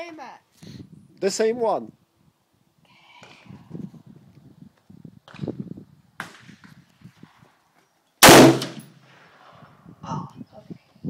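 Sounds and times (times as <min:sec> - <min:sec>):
rifle shot: 0:08.2 - 0:09.2.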